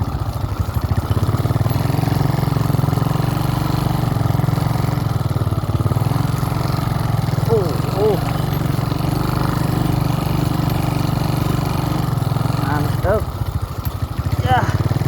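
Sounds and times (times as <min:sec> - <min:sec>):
small motorcycle engine running: 0:00.0 - 0:15.0.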